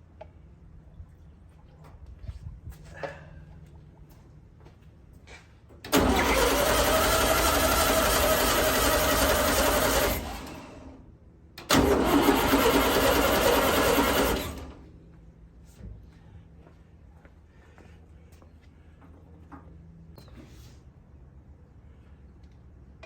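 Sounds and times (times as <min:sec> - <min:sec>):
car engine cranking on starter: 0:05.9 - 0:11.0, 0:11.6 - 0:14.9.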